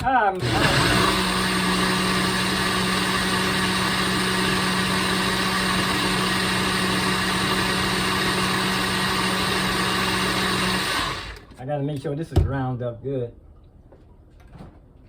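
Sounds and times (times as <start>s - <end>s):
blender running: 0.4s - 11.6s.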